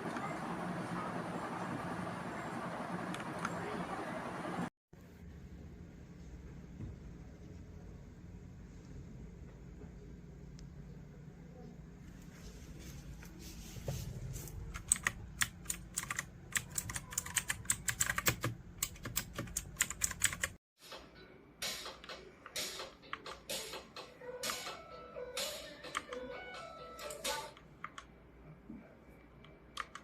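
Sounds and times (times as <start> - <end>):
mechanical keyboard typing: 14.7 - 20.6, 29.7 - 30.0.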